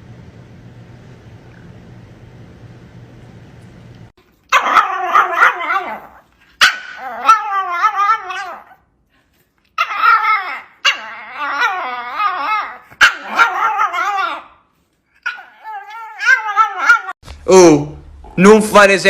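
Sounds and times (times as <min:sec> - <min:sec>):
dog howling: 0:04.5 - 0:08.8, 0:09.8 - 0:17.2.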